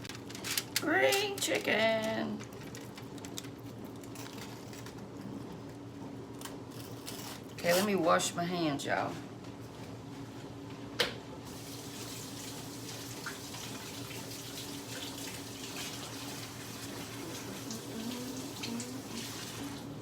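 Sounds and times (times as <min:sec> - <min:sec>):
faucet running: 0:11.5 - 0:20.0.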